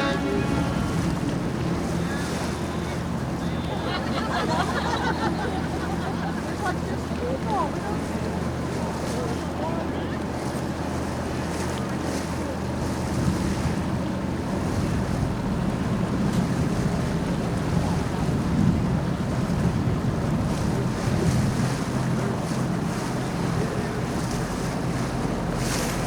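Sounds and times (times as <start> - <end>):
boat engine running: 0.0 - 26.0
water washing along hull: 0.0 - 26.0
wind buffeting microphone: 13.2 - 26.0.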